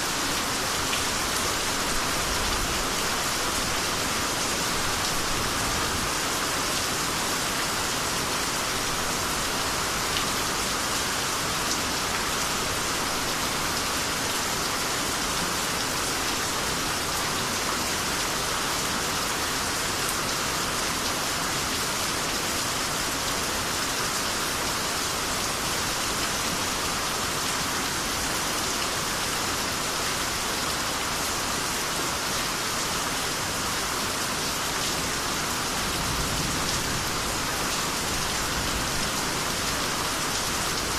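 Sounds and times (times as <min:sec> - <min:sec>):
rain pattering: 0:34.1 - 0:40.9.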